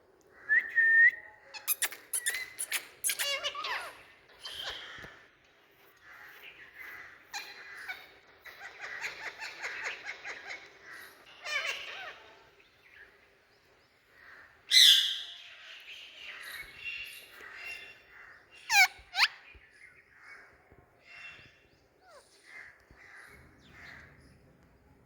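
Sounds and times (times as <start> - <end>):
parakeet screeching: 1.5 - 5.0, 11.4 - 12.4, 18.7 - 19.4
parakeet chattering: 1.6 - 4.8, 18.7 - 19.5.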